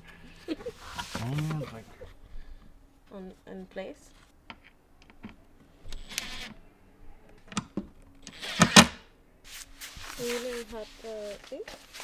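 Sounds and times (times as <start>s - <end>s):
cordless drill bursts: 8.3s - 9.0s.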